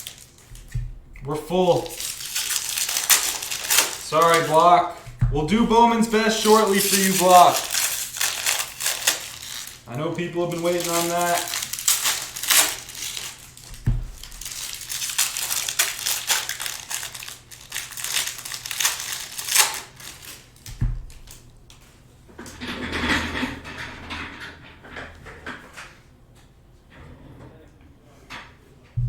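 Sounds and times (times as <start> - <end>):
plastic wrapping crinkling: 0.0 - 21.7
dull thumps: 0.4 - 6.4, 13.7 - 14.6, 20.7 - 21.3.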